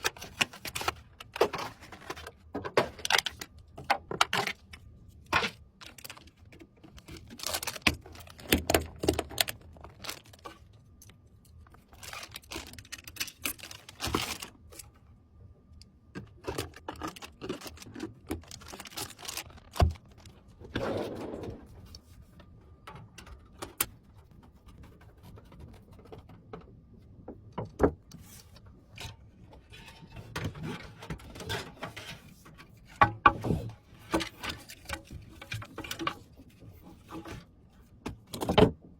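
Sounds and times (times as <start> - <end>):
packaging rustling: 4.2 - 14.8, 16.4 - 20.6.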